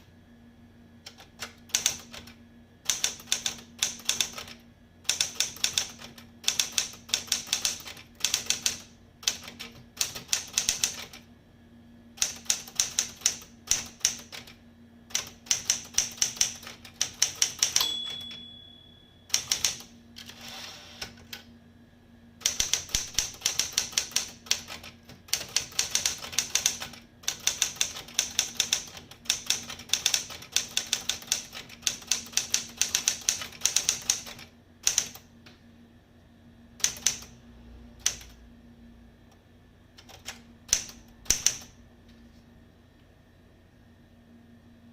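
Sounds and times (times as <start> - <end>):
typewriter carriage return: 15.6 - 18.5
typewriter key strikes: 17.1 - 18.6
typewriter margin bell ring: 17.8 - 19.7.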